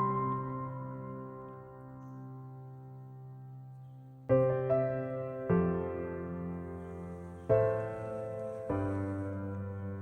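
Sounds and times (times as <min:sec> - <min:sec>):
soft background music chords: 0:00.0 - 0:10.0.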